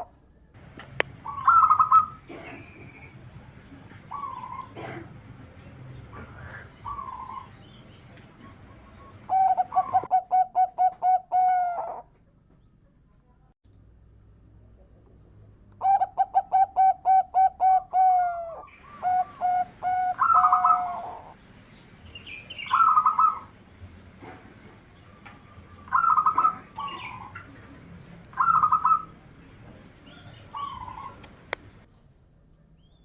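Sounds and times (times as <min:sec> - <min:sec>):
dove cooing: 0:00.9 - 0:12.1, 0:15.8 - 0:21.4, 0:22.4 - 0:23.6, 0:25.0 - 0:31.9.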